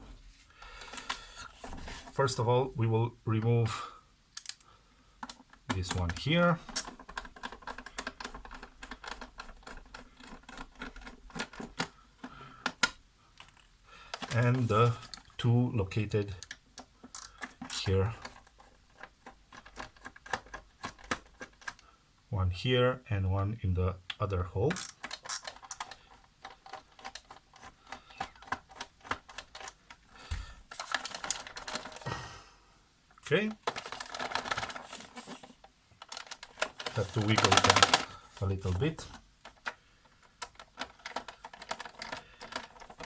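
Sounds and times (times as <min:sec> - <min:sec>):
screwdriver clicking and scraping: 0:24.7 - 0:29.8.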